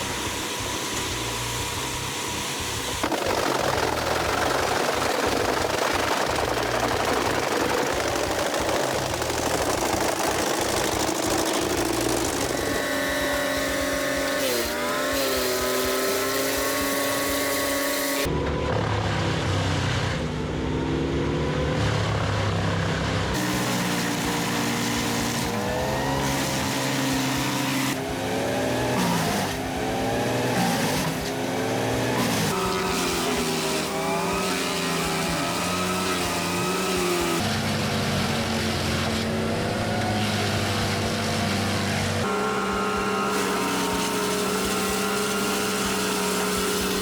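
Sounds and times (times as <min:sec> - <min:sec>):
wood chipper engines under load: 0:00.0 - 0:47.0.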